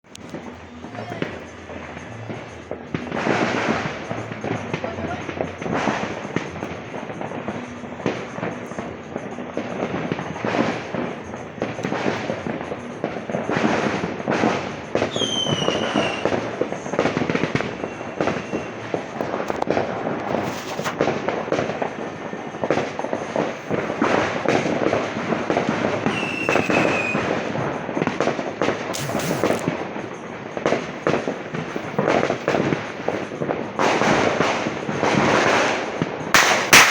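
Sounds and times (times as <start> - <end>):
firecrackers crackling: 0.0 - 36.9
falling whistle: 15.1 - 16.5, 17.6 - 19.0, 26.0 - 27.3.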